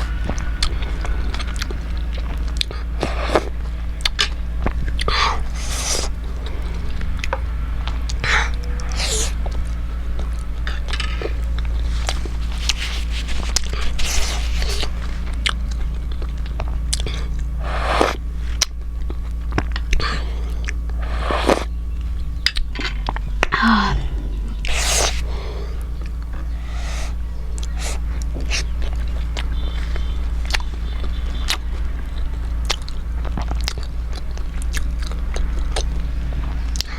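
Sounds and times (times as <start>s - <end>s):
chewing and lip smacking: 0.0s - 36.9s
steady low hum: 0.0s - 36.9s
wet mouth clicks: 19.6s - 21.7s.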